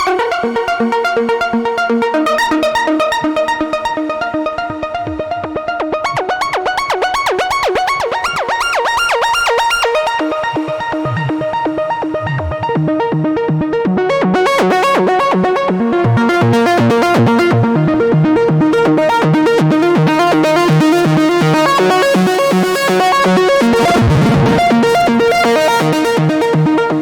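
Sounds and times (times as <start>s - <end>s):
synth sweep: 23.6s - 26.6s
synthesizer sequence: 23.6s - 26.8s.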